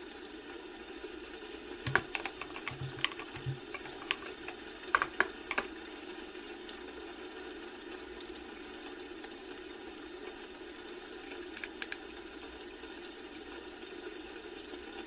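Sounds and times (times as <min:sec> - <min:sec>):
typing on a keyboard: 0:01.9 - 0:05.7.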